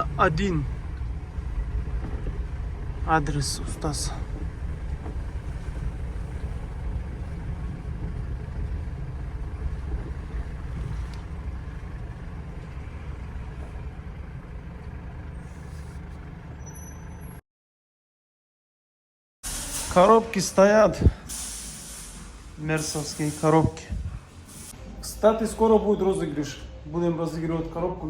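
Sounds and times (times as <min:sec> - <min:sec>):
road noise inside cab: 0:00.0 - 0:17.4, 0:23.2 - 0:25.0
van engine rumble: 0:00.0 - 0:17.4, 0:19.5 - 0:28.0.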